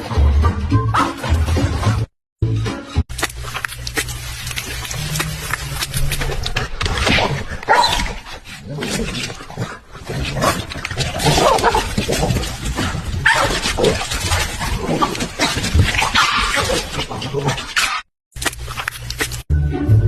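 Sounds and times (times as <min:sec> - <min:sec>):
dog barking: 0:07.7 - 0:08.0.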